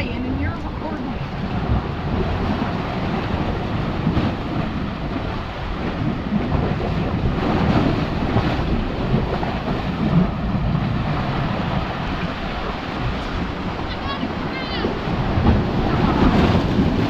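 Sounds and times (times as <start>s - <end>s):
surf splashing on rocks: 0.0s - 17.0s
wind buffeting microphone: 0.0s - 17.0s.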